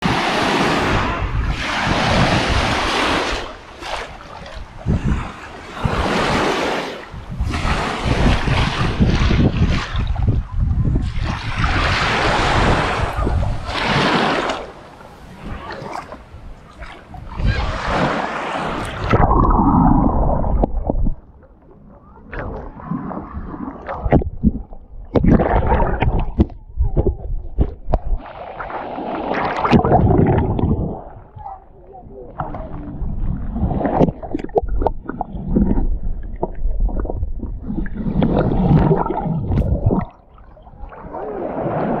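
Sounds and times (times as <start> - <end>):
sea water splashing: 0.0 - 42.0
underwater gurgling rumble: 0.7 - 42.0
bubbly pops: 19.1 - 21.2, 23.5 - 28.2, 29.4 - 31.0, 33.9 - 40.2.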